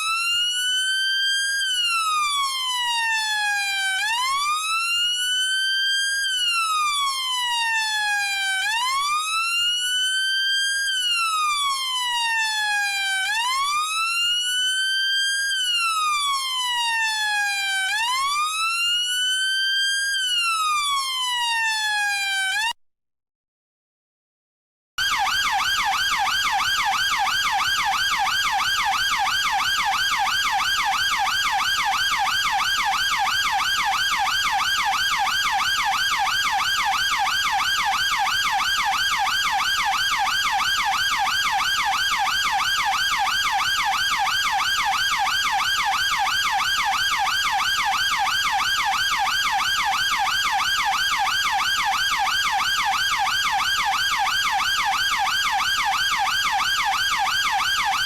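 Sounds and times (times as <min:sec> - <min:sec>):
police siren yelping: 0:00.0 - 0:22.7, 0:25.0 - 0:58.0.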